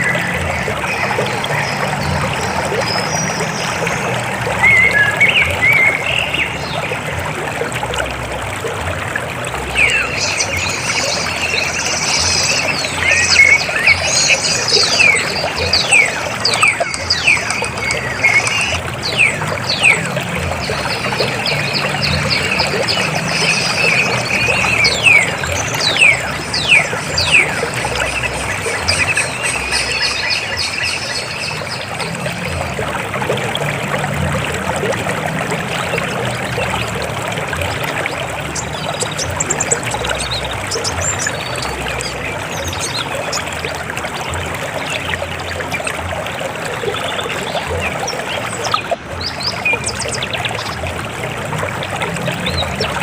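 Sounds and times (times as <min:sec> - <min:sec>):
river water flowing over rocks: 0:00.0 - 0:53.0
bird whistled calls: 0:10.9 - 0:20.0.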